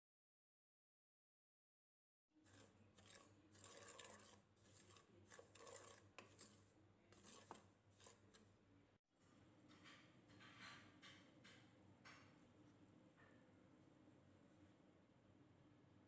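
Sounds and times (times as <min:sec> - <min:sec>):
scraping and rubbing: 0:02.4 - 0:08.5.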